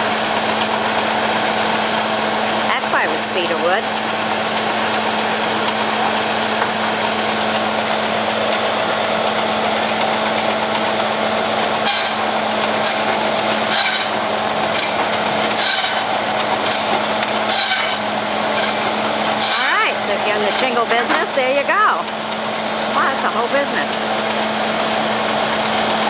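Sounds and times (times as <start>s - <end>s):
shingle mill engine and belts humming: 0.0s - 26.0s
saw rasping through wood: 11.1s - 21.5s.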